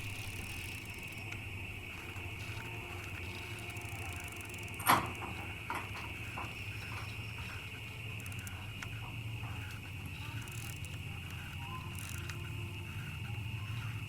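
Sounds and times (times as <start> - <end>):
bicycle clacking: 0.0 - 14.0
faint ticks: 0.0 - 14.0
high-pitched hum: 0.0 - 14.0.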